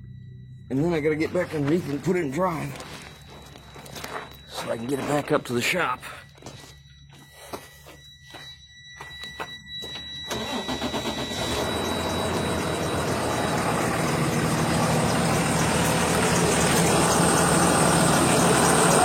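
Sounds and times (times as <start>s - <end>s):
diesel engine starter cranking: 10.2s - 19.0s
diesel engine idling: 10.3s - 19.0s.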